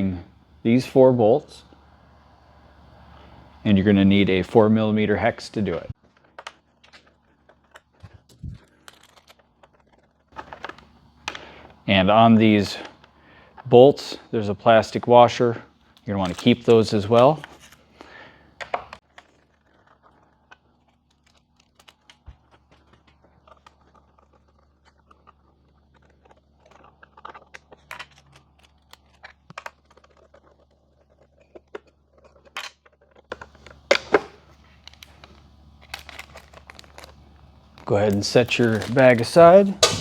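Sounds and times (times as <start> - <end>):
plastic bag rustling: 34.5 - 40.0.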